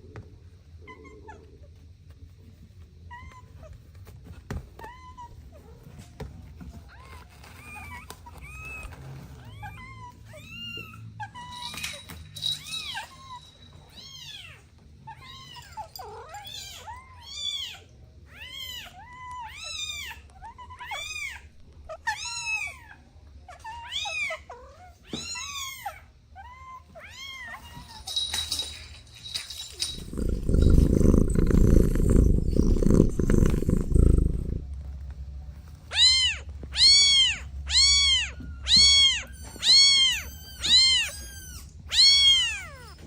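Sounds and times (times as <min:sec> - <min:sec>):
kittens meowing: 0:30.0 - 0:34.6.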